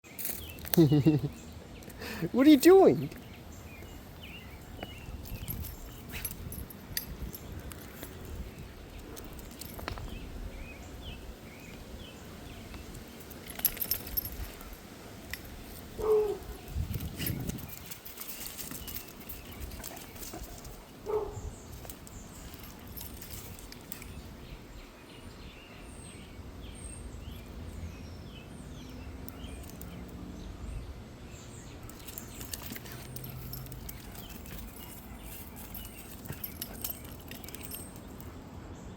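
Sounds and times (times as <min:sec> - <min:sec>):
small birds chirping: 0:00.0 - 0:38.9
metallic jingle: 0:05.1 - 0:10.2, 0:13.2 - 0:24.3, 0:31.9 - 0:38.4.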